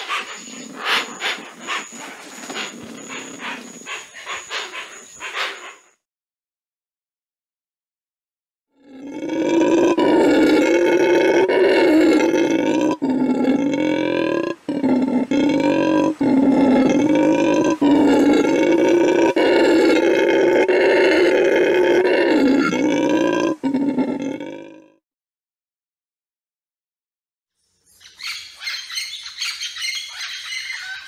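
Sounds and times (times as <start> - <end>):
long drawn-out animal call: 8.7 - 25.0.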